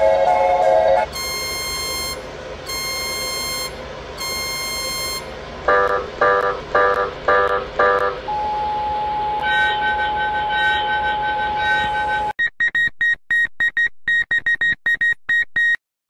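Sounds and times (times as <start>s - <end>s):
pulsing alarm: 0.0s - 12.4s
steady alert tones: 1.0s - 12.3s
short high beeps: 1.1s - 14.3s.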